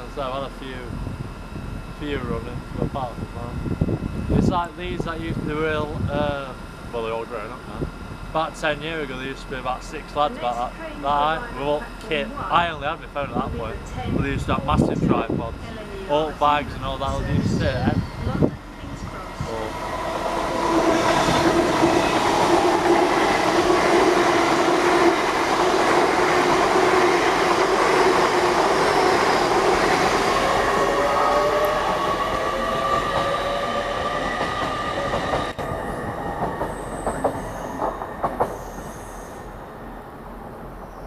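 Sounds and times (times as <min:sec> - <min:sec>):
train running past: 0:00.0 - 0:41.0
train wheels squealing: 0:28.7 - 0:39.6.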